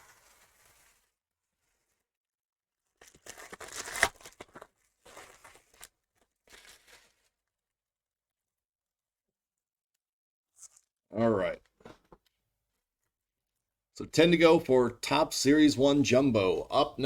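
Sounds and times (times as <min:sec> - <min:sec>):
card packaging tearing and crinkling: 0:03.0 - 0:07.4.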